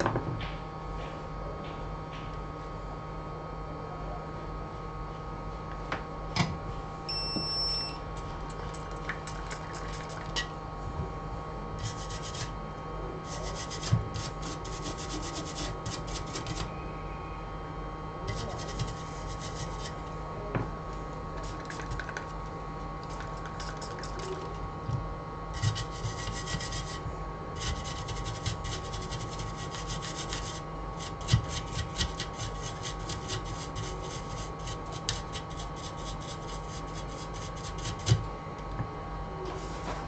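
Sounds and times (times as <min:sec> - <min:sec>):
electrical hum: 0:00.0 - 0:40.0
scratchy rubbing strokes: 0:11.8 - 0:12.5, 0:13.2 - 0:16.6, 0:18.3 - 0:20.0, 0:27.6 - 0:38.1.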